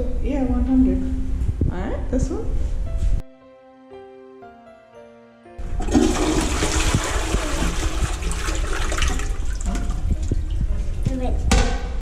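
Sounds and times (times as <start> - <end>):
toilet flushing: 5.6 - 10.7.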